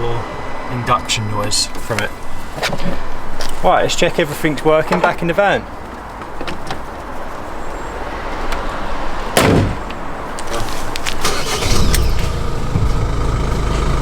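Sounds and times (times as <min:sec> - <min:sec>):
van door shutting: 0:11.2 - 0:14.0
low rumble: 0:11.7 - 0:14.0.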